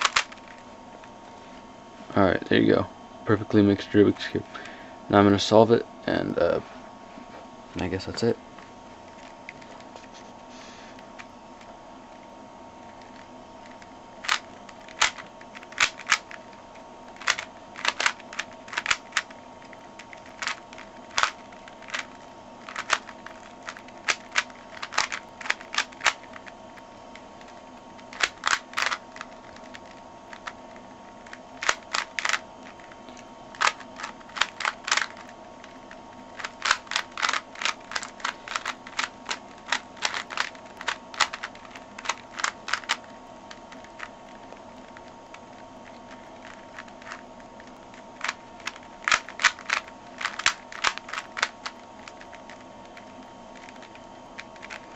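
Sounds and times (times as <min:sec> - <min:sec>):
faint steady hum: 0:00.0 - 0:54.9
plastic puzzle cube clicking turns: 0:13.0 - 0:16.4, 0:17.2 - 0:19.3, 0:20.2 - 0:26.4, 0:28.1 - 0:30.6, 0:31.3 - 0:32.4, 0:33.5 - 0:35.8, 0:36.4 - 0:44.1, 0:46.0 - 0:47.2, 0:48.2 - 0:52.6, 0:54.6 - 0:54.9.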